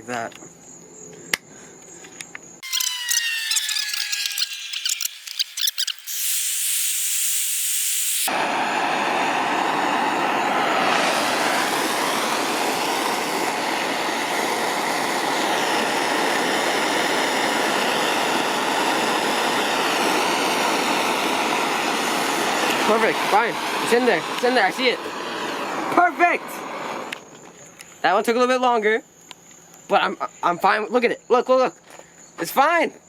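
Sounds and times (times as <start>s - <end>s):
propane torch flame hissing: 5.4s - 27.2s.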